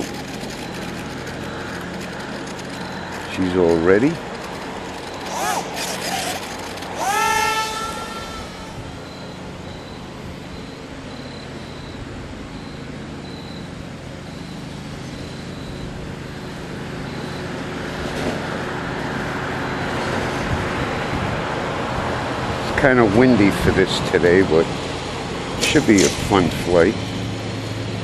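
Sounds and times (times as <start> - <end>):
short high-pitched beeps: 0.0 - 6.9, 9.0 - 12.0
low engine hum: 0.0 - 28.0.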